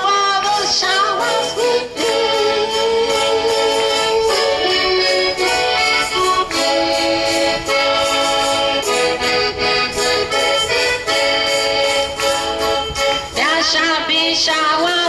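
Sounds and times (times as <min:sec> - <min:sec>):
accordion chords: 0:00.0 - 0:15.0
person singing: 0:00.0 - 0:15.0.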